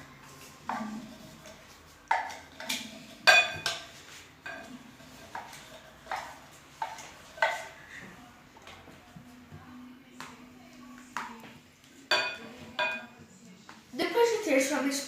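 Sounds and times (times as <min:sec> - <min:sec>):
spoon clinking against bowl: 0:12.1 - 0:13.1.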